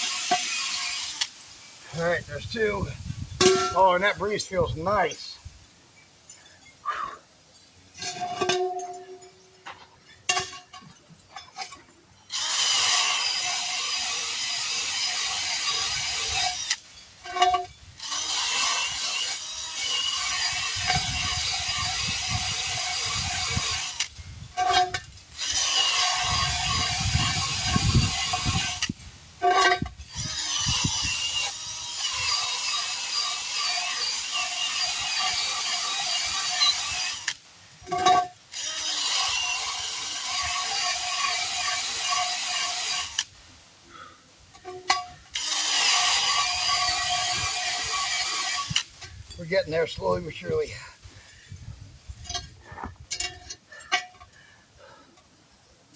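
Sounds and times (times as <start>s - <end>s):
power tool running: 0.0s - 1.4s, 12.3s - 29.0s, 29.6s - 43.3s, 45.3s - 49.0s.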